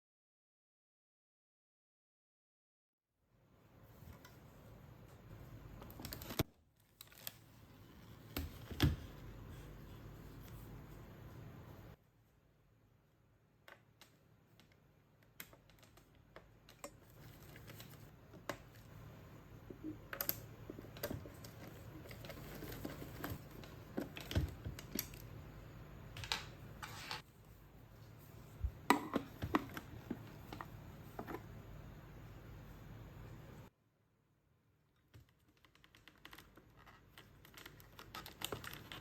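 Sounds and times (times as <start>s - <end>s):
hands handling plastic parts: 19.7s - 25.5s.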